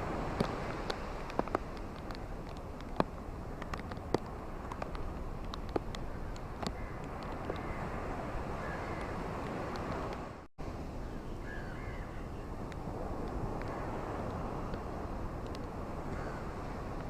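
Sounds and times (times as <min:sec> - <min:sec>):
ocean waves washing on shore: 0:00.0 - 0:17.0
faint bird calls: 0:11.0 - 0:12.5.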